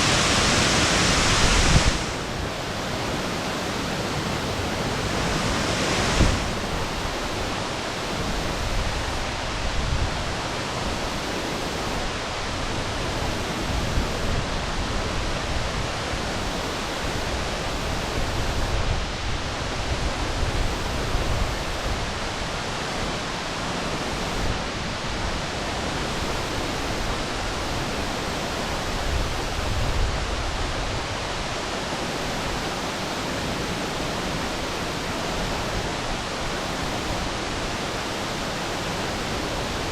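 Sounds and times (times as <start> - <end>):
waterfall rushing: 0.0 - 18.8.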